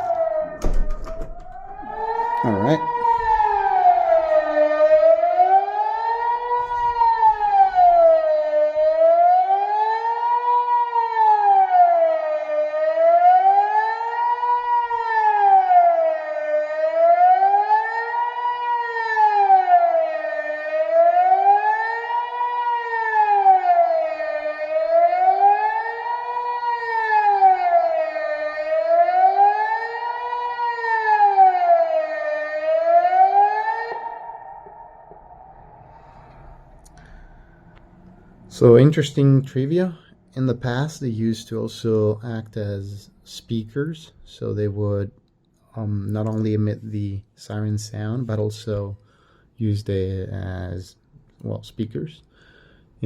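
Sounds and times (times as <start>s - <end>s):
civil defence siren wavering tone: 0.0s - 38.6s.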